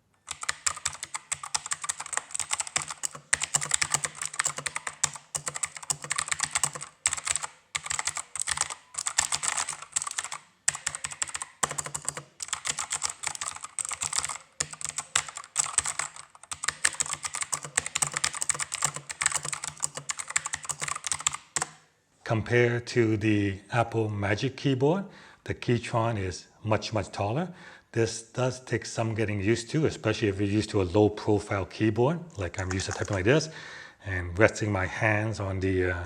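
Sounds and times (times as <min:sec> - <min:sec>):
mechanical keyboard clicks: 0:00.2 - 0:21.8, 0:32.5 - 0:33.2.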